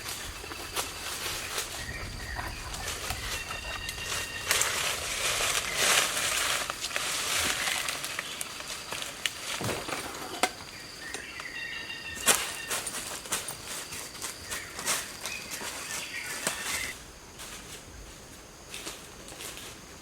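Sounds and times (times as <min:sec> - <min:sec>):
bird calls: 0:00.0 - 0:06.1, 0:09.7 - 0:13.1, 0:13.8 - 0:17.0
high insect drone: 0:00.0 - 0:20.0
rustling in dry leaves: 0:00.0 - 0:20.0.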